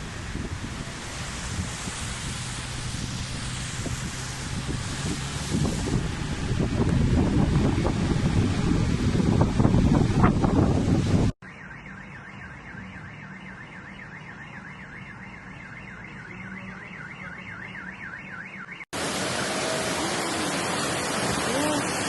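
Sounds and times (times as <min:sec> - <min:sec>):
rushing floodwater: 0:00.0 - 0:11.3, 0:19.0 - 0:22.0
wind on microphone: 0:00.0 - 0:11.4
warbling electronic alarm siren: 0:11.4 - 0:20.7.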